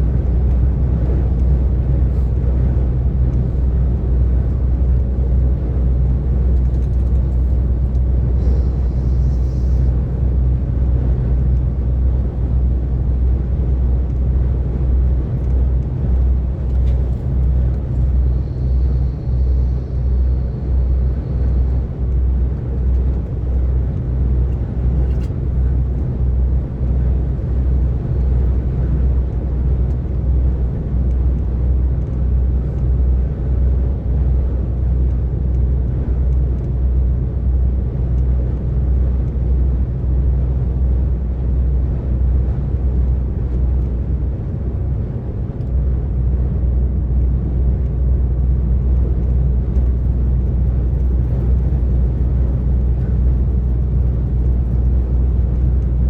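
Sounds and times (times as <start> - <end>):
lorry diesel engine drone: 0.0 - 56.0
road noise: 0.0 - 56.0.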